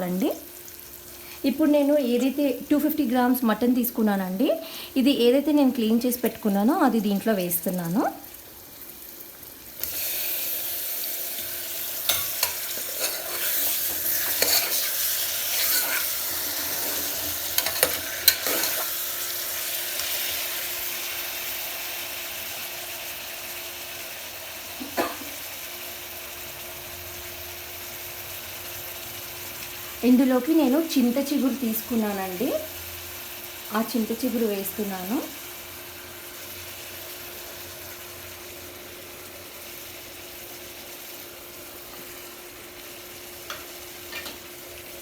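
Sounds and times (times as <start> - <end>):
meat sizzling in hot oil: 0.0 - 45.0
spatula clicking and scraping: 12.1 - 18.9.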